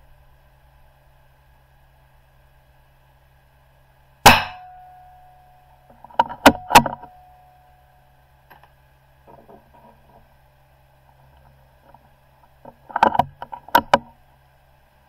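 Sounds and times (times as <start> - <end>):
rifle shot: 4.2 - 4.8.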